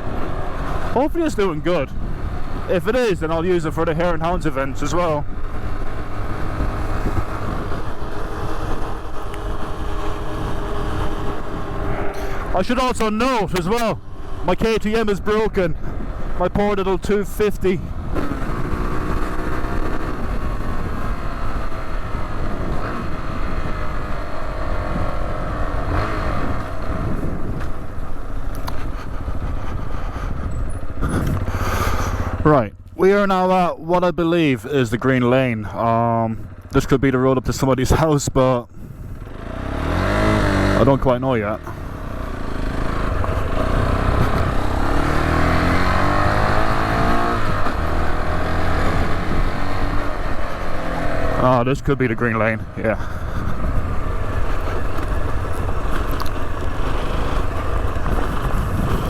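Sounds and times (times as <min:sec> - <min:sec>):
wind noise on microphone: 0:00.0 - 0:03.2, 0:04.4 - 0:12.8, 0:17.8 - 0:32.4, 0:38.0 - 0:41.1, 0:41.8 - 0:51.9, 0:52.6 - 0:59.0
motorcycle engine running: 0:00.0 - 0:33.0, 0:38.8 - 0:59.0.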